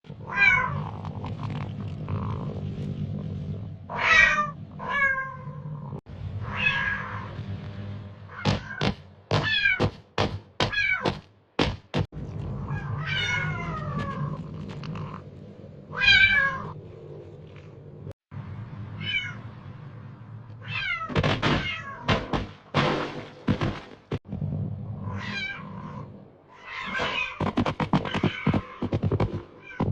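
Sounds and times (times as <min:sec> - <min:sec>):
cat meowing: 0:00.2 - 0:00.8, 0:03.9 - 0:05.5, 0:12.7 - 0:14.4, 0:19.0 - 0:19.4.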